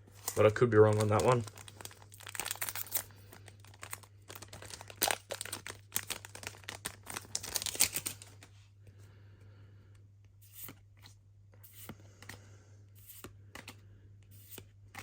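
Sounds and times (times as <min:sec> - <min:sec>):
foil wrapper crinkling: 0:00.2 - 0:08.5.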